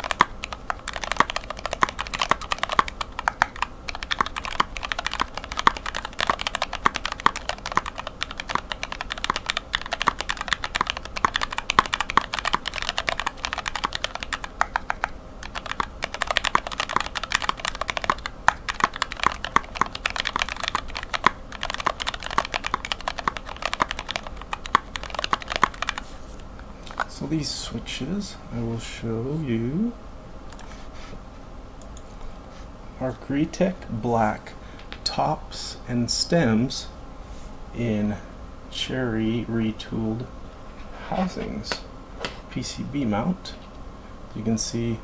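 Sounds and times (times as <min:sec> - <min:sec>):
mechanical keyboard typing: 0:00.0 - 0:26.1.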